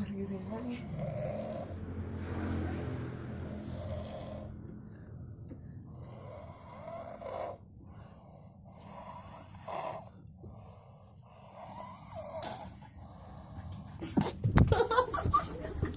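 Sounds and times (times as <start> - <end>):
child snoring: 0.0 - 2.0, 3.3 - 4.6, 6.0 - 13.8.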